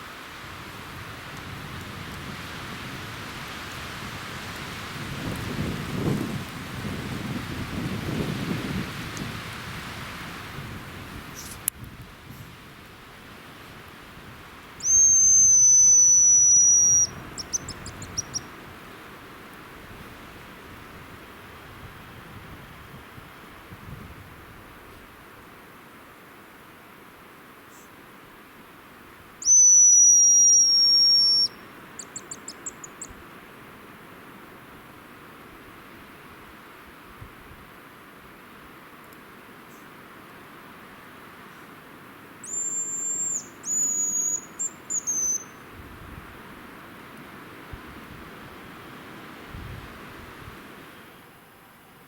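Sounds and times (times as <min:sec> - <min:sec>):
wind noise: 0:00.0 - 0:16.0, 0:17.0 - 0:18.9, 0:19.8 - 0:25.1, 0:45.5 - 0:46.6, 0:47.6 - 0:50.9
grouse high whistling call: 0:14.8 - 0:18.5, 0:29.4 - 0:33.1, 0:42.4 - 0:45.6.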